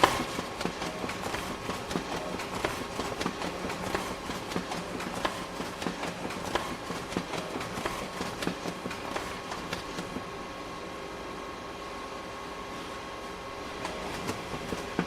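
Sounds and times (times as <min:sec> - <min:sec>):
photocopier clicking and humming: 0:00.0 - 0:10.4, 0:13.6 - 0:15.0.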